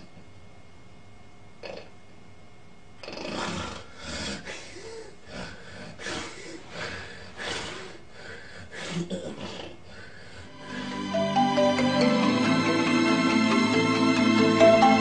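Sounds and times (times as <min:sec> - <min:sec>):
sleeping person snorting and gasping: 0:03.0 - 0:11.0.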